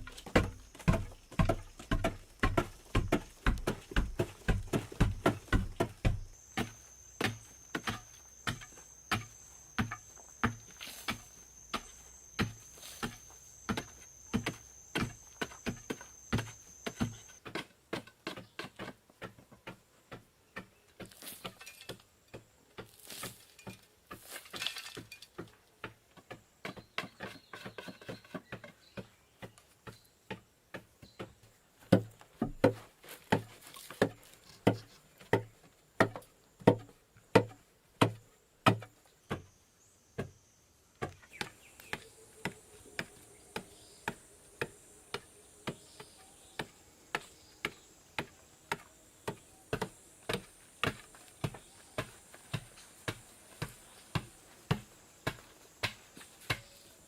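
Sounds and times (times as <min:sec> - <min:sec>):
rhythmic dull knocking thuds: 0:00.0 - 0:17.4, 0:29.4 - 0:39.5.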